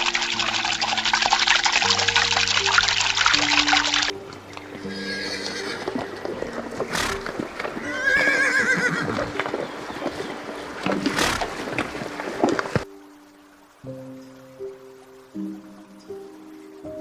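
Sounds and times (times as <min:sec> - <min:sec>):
horse whinnying: 0:04.8 - 0:06.0, 0:06.7 - 0:09.5, 0:10.8 - 0:12.2
short noisy horse blasts: 0:06.8 - 0:09.3, 0:10.8 - 0:12.2.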